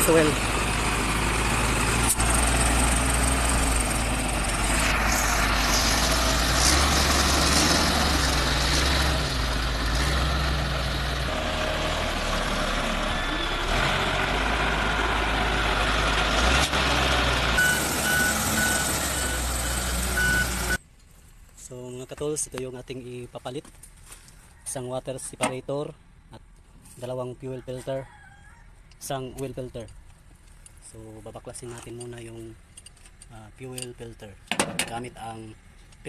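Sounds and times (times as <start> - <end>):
bulldozer diesel engine running: 0.0 - 20.8
short high beeps: 17.6 - 20.8.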